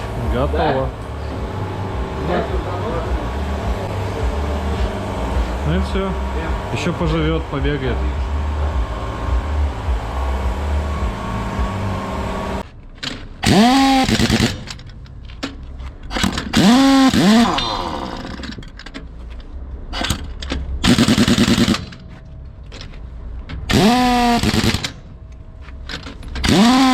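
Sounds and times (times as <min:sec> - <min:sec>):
whirring bursts: 0:00.0 - 0:12.7, 0:13.4 - 0:15.1, 0:16.2 - 0:18.6, 0:20.0 - 0:22.1, 0:23.6 - 0:25.2, 0:25.9 - 0:26.9
steady mechanical hum: 0:00.0 - 0:26.9
rapid rattling burst: 0:13.4 - 0:15.1, 0:16.2 - 0:18.5, 0:20.8 - 0:22.0, 0:23.7 - 0:25.1, 0:26.4 - 0:26.9.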